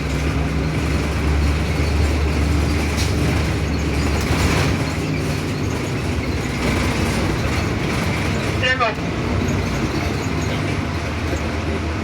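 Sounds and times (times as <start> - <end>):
bus engine running: 0.0 - 12.0.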